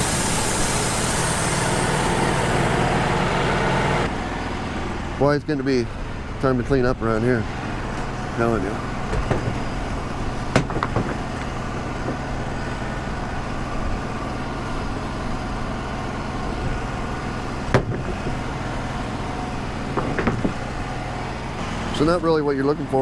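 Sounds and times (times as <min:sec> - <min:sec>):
sawmill droning: 0:00.0 - 0:23.0
short sharp knocks: 0:10.5 - 0:11.4.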